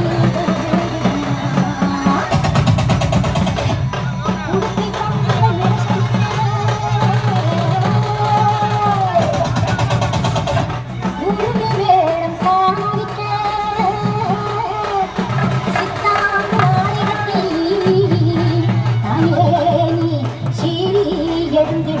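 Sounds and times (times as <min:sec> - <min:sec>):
person singing: 0:00.0 - 0:03.6, 0:11.0 - 0:22.0.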